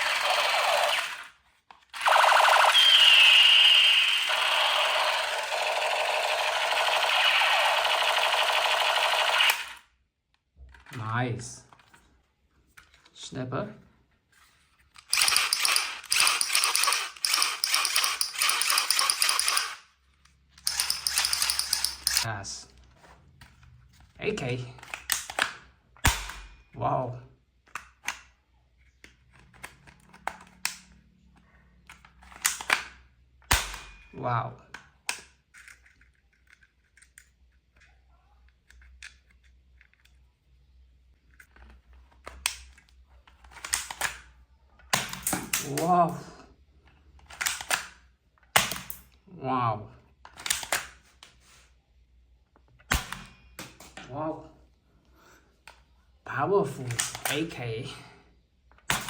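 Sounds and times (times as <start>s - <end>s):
toy gun firing rattling bursts: 0.0s - 1.3s, 2.0s - 9.9s, 15.0s - 19.9s, 20.6s - 22.3s
plastic toy gun clicks: 14.9s - 19.9s, 20.6s - 22.3s, 24.8s - 26.5s, 27.7s - 28.3s, 31.9s - 33.9s, 43.4s - 45.9s, 47.2s - 49.0s, 50.3s - 51.0s, 56.8s - 57.4s.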